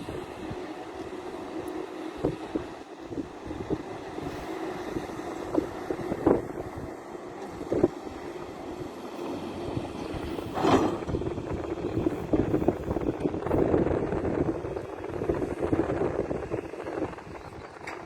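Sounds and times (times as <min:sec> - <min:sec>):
heavy excavation machinery rumbling: 0:00.0 - 0:18.0.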